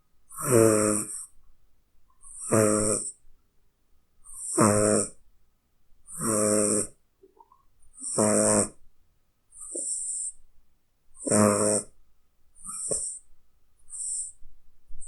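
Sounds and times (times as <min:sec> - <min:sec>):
cat snoring: 0:00.3 - 0:01.3, 0:02.2 - 0:03.2, 0:04.2 - 0:05.2, 0:06.1 - 0:07.0, 0:08.0 - 0:08.8, 0:09.5 - 0:10.3, 0:11.2 - 0:12.0, 0:12.6 - 0:13.2, 0:13.9 - 0:14.4.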